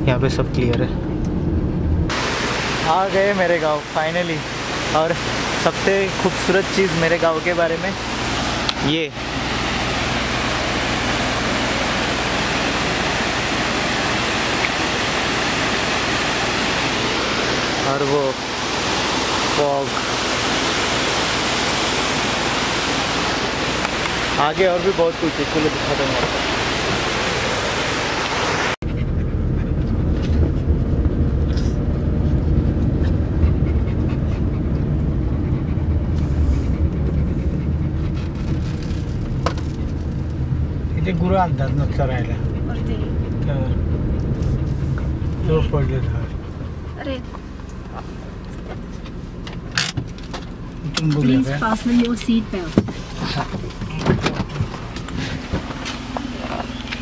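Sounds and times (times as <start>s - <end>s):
car driving rumble inside cabin: 0.0s - 2.4s, 28.2s - 57.0s
flowing water rushing: 2.1s - 28.8s
dog panting: 33.1s - 38.6s, 41.4s - 48.4s.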